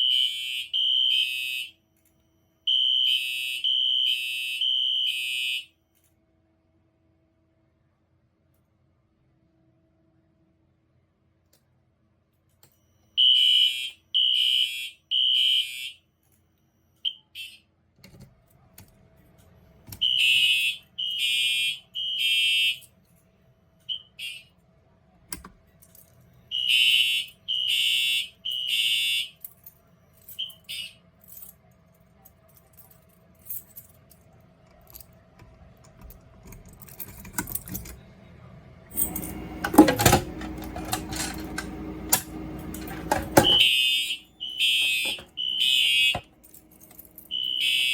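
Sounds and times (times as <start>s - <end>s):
alarm chirps: 0.0s - 1.8s, 2.4s - 5.7s, 12.8s - 16.0s, 16.6s - 17.6s, 20.0s - 22.9s, 23.8s - 24.5s, 26.5s - 29.4s, 30.3s - 31.0s, 42.8s - 46.3s, 47.2s - 47.9s
fire alarm horn blasts: 0.0s - 5.8s, 12.9s - 16.0s, 16.8s - 17.7s, 20.0s - 22.9s, 23.8s - 24.6s, 26.5s - 29.5s, 30.3s - 31.0s, 39.0s - 46.4s, 47.1s - 47.9s
clicking and rattling: 32.6s - 38.0s, 39.0s - 43.7s, 44.8s - 47.4s.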